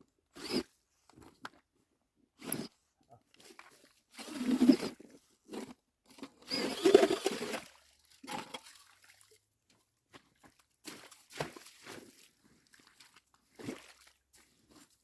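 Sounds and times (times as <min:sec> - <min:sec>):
boots crunching through wet slush: 0:10.1 - 0:15.0.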